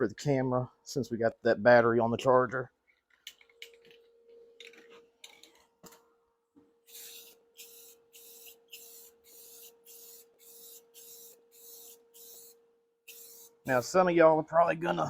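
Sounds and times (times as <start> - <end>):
spray can hissing bursts: 6.9 - 13.8.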